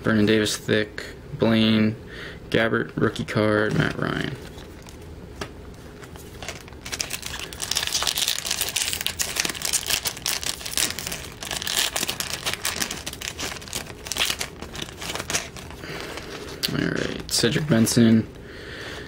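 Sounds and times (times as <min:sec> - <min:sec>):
wrapper tearing and crinkling: 0:06.0 - 0:17.5.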